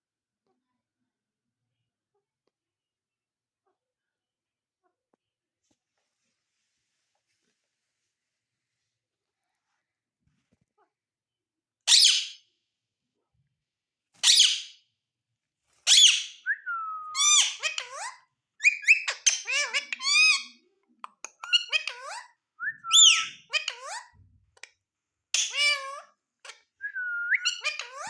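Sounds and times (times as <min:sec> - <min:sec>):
parrot screeching: 0:11.9 - 0:12.3, 0:14.2 - 0:14.7, 0:15.9 - 0:16.4, 0:17.1 - 0:20.6, 0:22.8 - 0:24.2, 0:25.4 - 0:26.6, 0:27.3 - 0:28.0
parrot chirping and warbling: 0:11.9 - 0:12.4, 0:14.2 - 0:14.7, 0:15.8 - 0:24.7, 0:25.4 - 0:28.0.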